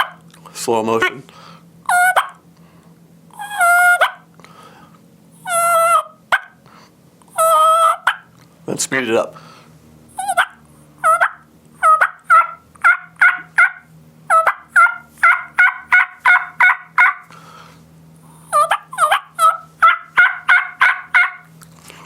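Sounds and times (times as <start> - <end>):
turkey yelps on mouth call: 0.0 - 0.2, 1.9 - 2.4, 3.4 - 4.3, 5.4 - 6.6, 7.3 - 8.3, 10.2 - 17.2, 18.4 - 21.5.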